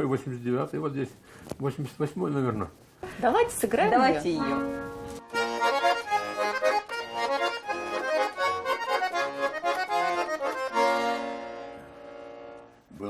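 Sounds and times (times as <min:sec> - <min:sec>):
button accordion playing: 0:03.9 - 0:12.9.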